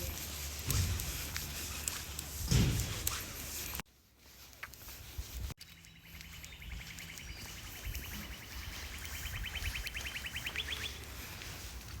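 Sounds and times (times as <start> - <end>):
bird trilling: 6.0 - 11.0.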